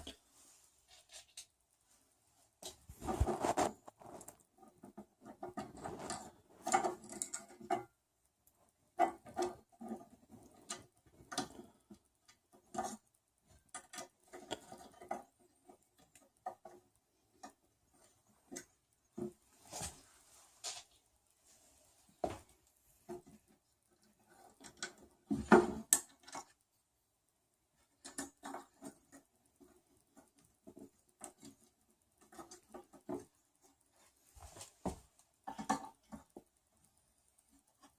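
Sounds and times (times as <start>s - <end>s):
small screws and plastic parts clicking: 3.8s - 19.3s, 27.8s - 33.8s.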